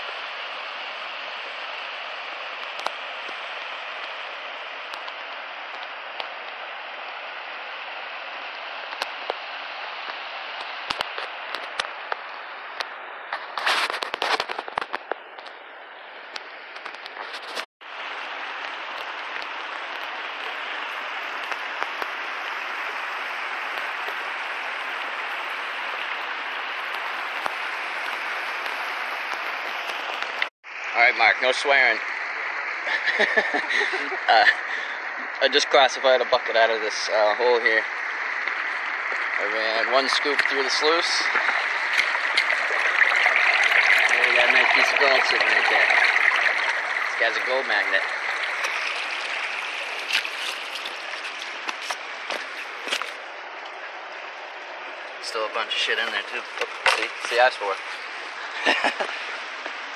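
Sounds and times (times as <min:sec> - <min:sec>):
river water rushing: 0:00.0 - 0:31.0, 0:36.6 - 0:59.9.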